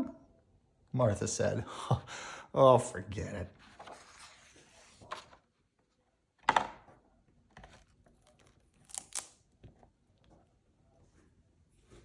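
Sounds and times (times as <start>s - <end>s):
soft handling noises: 3.5s - 6.1s, 7.0s - 12.0s.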